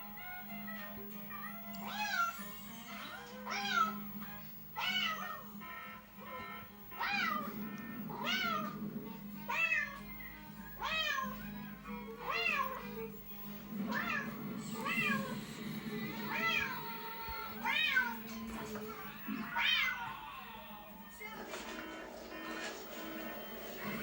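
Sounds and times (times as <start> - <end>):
cat meowing from phone: 1.8 - 2.5, 7.0 - 7.5.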